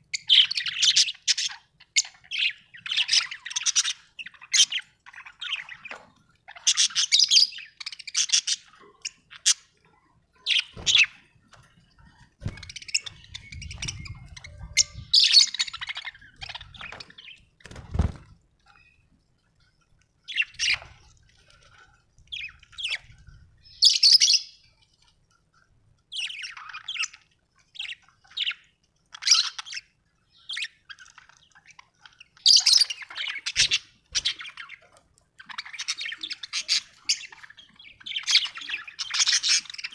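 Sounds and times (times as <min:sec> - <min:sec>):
budgerigar chirping and chattering: 0:12.5 - 0:17.4, 0:35.4 - 0:39.9.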